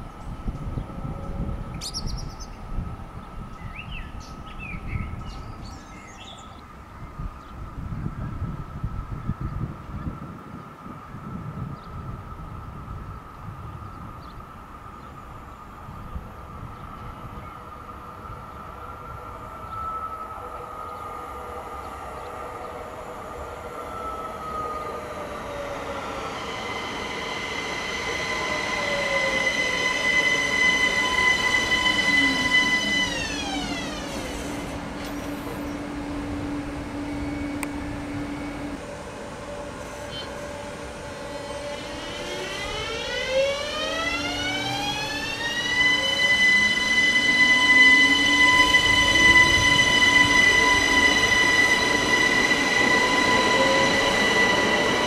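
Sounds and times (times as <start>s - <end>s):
electric train passing: 0.0s - 55.0s
traction motor whine: 21.8s - 55.0s.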